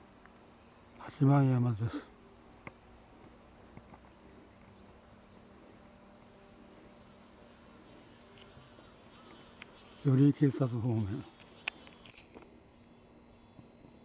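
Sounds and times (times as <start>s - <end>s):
insect high rapid chirping: 0.0s - 14.0s.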